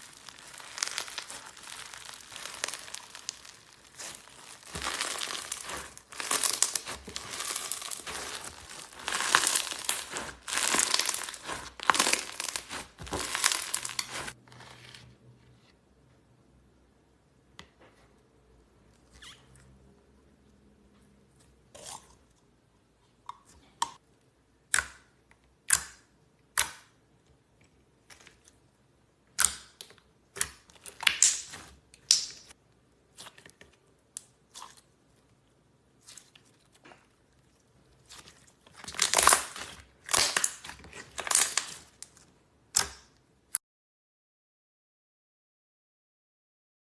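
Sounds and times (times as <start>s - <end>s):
slime squishing and crackling: 0.0s - 14.4s, 30.3s - 33.6s, 36.0s - 43.1s.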